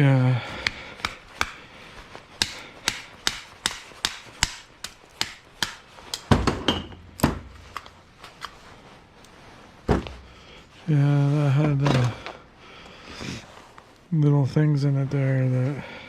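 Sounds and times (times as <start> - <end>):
hammer blows: 2.4 - 6.3.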